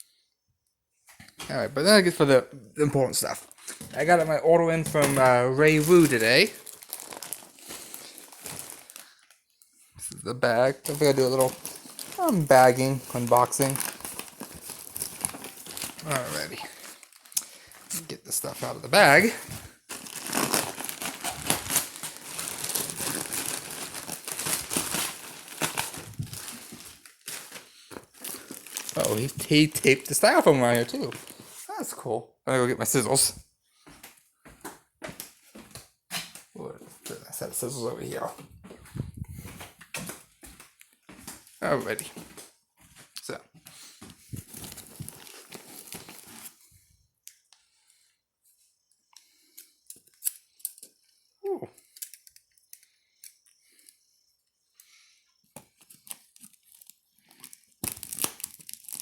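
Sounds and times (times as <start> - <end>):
shipping bag crinkling: 3.1 - 9.3, 10.4 - 31.6, 44.3 - 46.6, 56.0 - 59.0.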